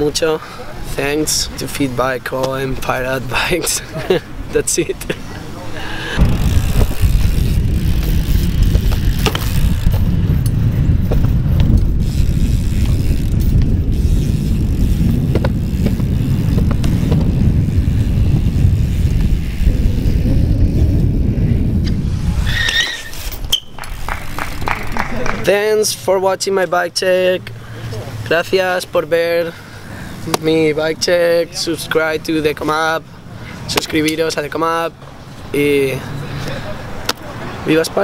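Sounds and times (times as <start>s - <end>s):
bike tyres rumbling: 0.0s - 25.8s, 27.6s - 37.8s
bike ticks and knocks: 6.2s - 19.6s
short squeak: 22.4s - 23.8s.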